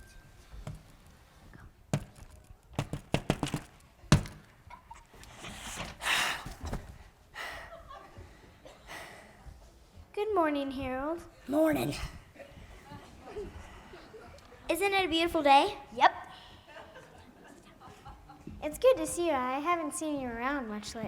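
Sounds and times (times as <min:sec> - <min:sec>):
knocks and thumps: 0:01.9 - 0:04.6.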